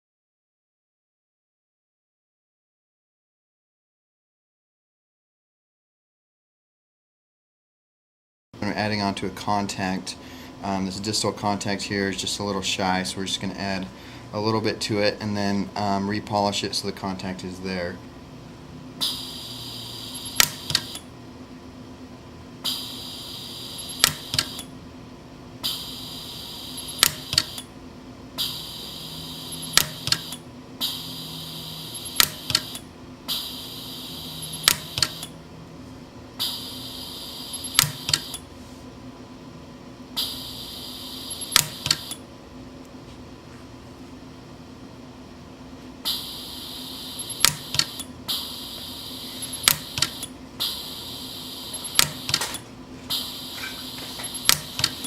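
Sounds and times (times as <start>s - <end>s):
welder high hiss: 19.0s - 21.0s, 22.6s - 24.7s, 25.6s - 27.7s, 28.4s - 35.3s, 36.4s - 38.4s, 40.2s - 42.2s, 46.1s - 55.0s
welder snapping: 20.4s - 21.0s, 23.9s - 24.7s, 26.9s - 27.7s, 29.7s - 30.4s, 32.1s - 32.9s, 34.6s - 35.4s, 37.7s - 38.4s, 41.4s - 42.2s, 47.3s - 48.1s, 49.5s - 50.8s, 51.7s - 55.0s.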